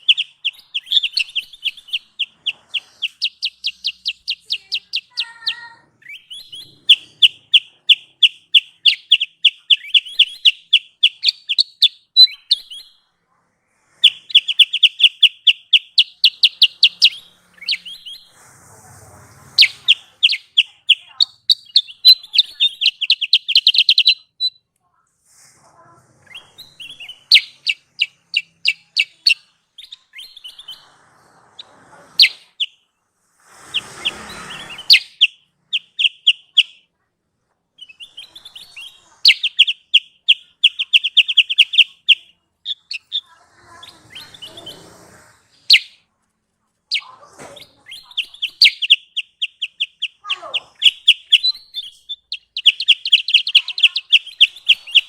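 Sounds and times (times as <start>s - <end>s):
songbird chirping and trilling: 0.0s - 18.4s, 19.1s - 25.0s, 25.7s - 46.1s, 46.8s - 55.0s
hiss-like noise burst: 18.2s - 20.2s, 33.2s - 34.9s.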